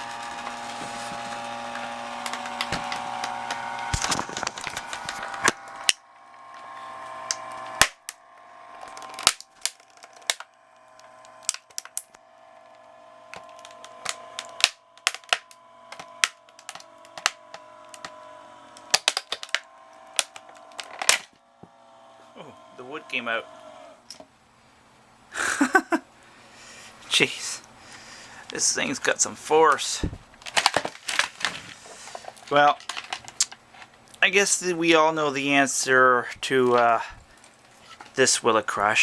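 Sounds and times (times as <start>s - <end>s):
plastic cracking and snapping: 0.0s - 21.8s, 29.7s - 34.2s
electric ram whining: 0.0s - 25.2s, 26.5s - 39.0s.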